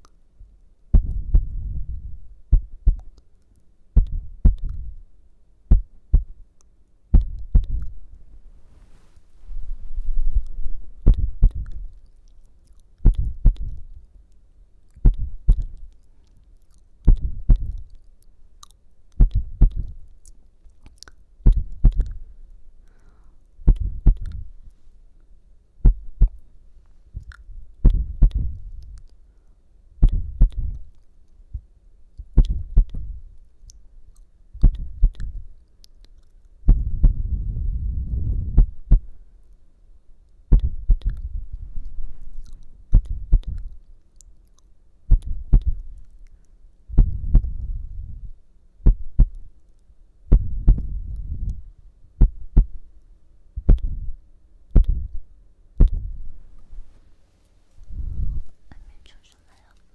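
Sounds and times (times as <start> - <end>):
soft low heartbeat thumps: 0.4 - 3.2, 3.9 - 6.5, 7.1 - 12.1, 13.0 - 14.1, 15.0 - 16.0, 17.0 - 17.9, 19.2 - 20.1, 21.4 - 22.7, 23.6 - 24.8, 25.8 - 29.1, 30.0 - 33.4, 34.5 - 35.6, 36.6 - 39.3, 40.5 - 43.9, 45.0 - 46.1, 46.8 - 49.6, 50.2 - 57.0, 57.8 - 59.1.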